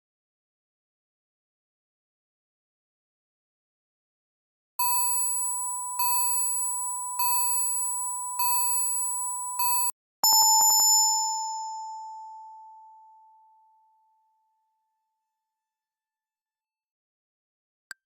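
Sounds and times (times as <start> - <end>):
electronic phone ringtone beep: 4.8 - 12.0.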